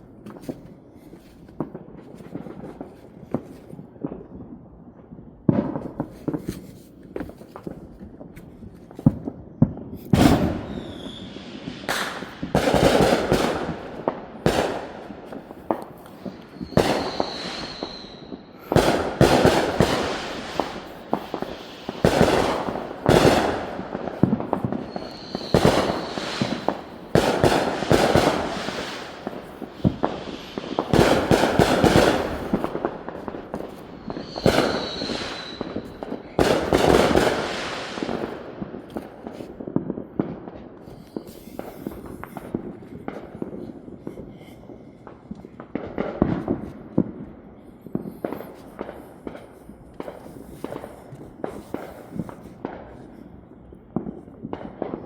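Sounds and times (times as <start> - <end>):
fireworks cracking and popping: 0.0 - 55.0
short high whistles: 10.7 - 12.2, 16.4 - 18.7, 24.8 - 26.9, 33.9 - 35.9.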